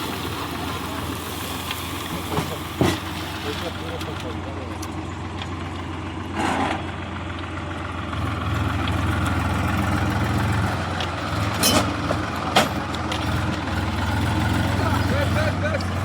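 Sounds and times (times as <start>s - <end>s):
heavy diesel engine idling: 0.0s - 16.0s.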